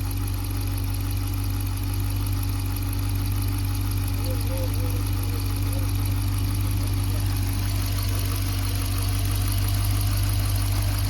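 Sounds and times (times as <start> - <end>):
engine idling: 0.0 - 11.0.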